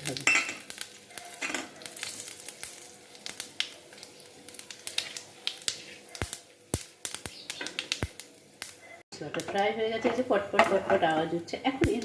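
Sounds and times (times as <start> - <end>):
faint sizzle: 0.0 - 12.0
spices crackling in hot oil: 0.0 - 12.0.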